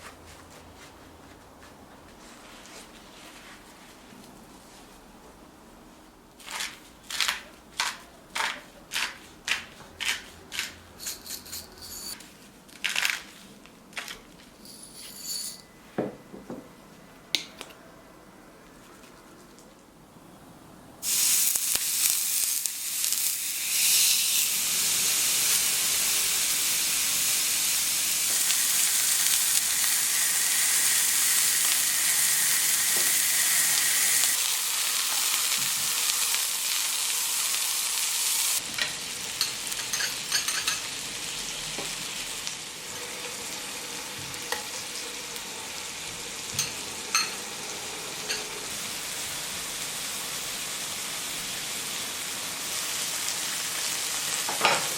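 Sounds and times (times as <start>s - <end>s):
fish sizzling in a pan: 21.0s - 54.9s.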